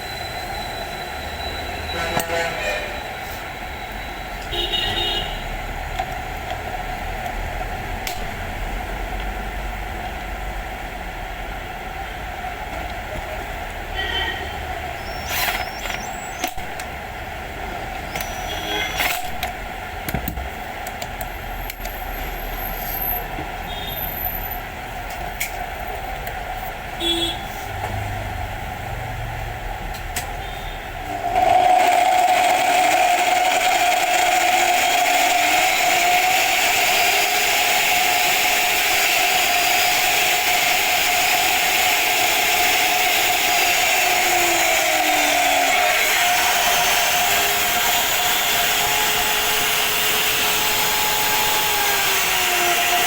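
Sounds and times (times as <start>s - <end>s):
cut-off saw whirring: 14.7s - 17.0s, 17.9s - 19.8s, 31.2s - 53.0s.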